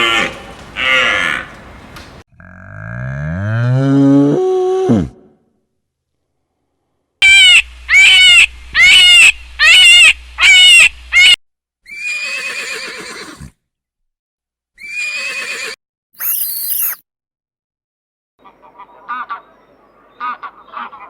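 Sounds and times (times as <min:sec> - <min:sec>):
horse neighing: 0:11.9 - 0:13.5, 0:14.8 - 0:15.8.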